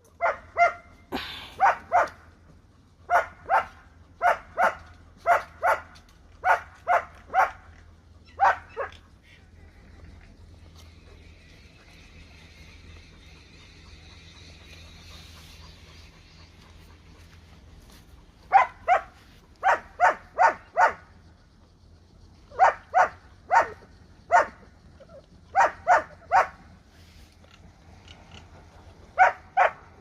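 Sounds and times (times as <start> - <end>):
faint low hum: 0.0 - 30.0
dog barking: 0.2 - 2.2, 3.1 - 7.7, 8.3 - 9.0, 18.5 - 21.2, 22.5 - 24.6, 25.5 - 26.6, 29.2 - 30.0.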